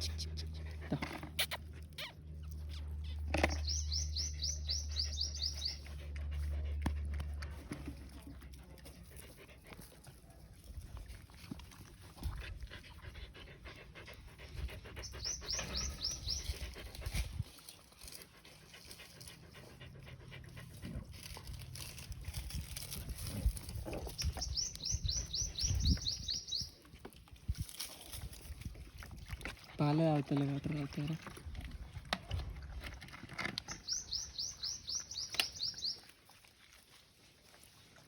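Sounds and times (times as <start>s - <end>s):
dogs chewing and smacking: 0.0s - 25.9s, 26.7s - 38.0s
bird chirping: 1.4s - 5.8s, 15.0s - 16.8s, 24.2s - 26.8s, 33.7s - 36.0s.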